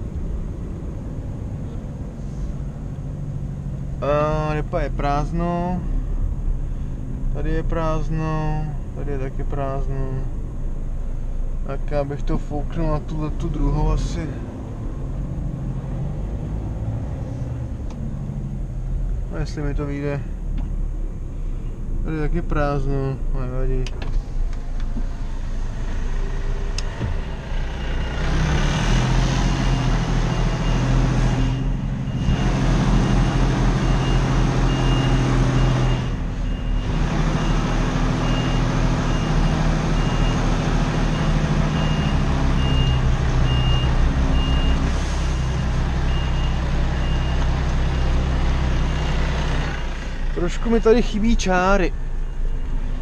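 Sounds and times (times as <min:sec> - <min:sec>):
diesel engine running: 0:00.0 - 0:53.0
reverse alarm beeping: 0:29.5 - 0:40.4, 0:41.0 - 0:48.3, 0:52.2 - 0:53.0.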